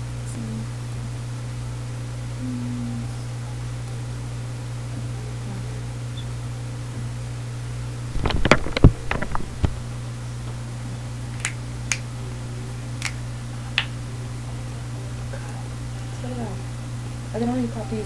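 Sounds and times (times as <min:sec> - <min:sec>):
low hum: 0:00.0 - 0:18.0
knuckles cracking: 0:08.2 - 0:09.8, 0:11.4 - 0:12.1, 0:13.0 - 0:14.0.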